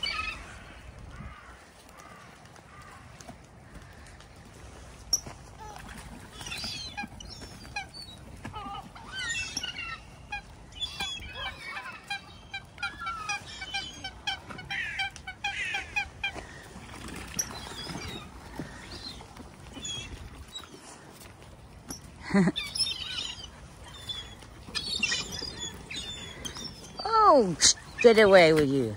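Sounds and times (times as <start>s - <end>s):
swans and ducks calling: 0.0s - 28.9s.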